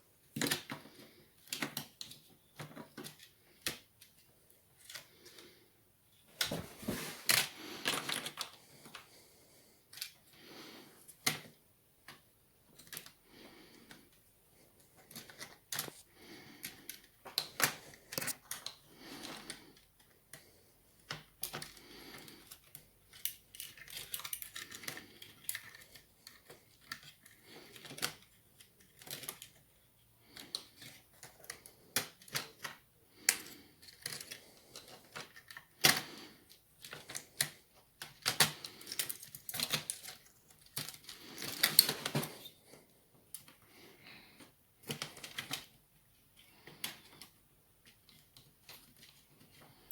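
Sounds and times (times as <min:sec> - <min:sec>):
small tools clicking and tapping: 0:16.6 - 0:29.6.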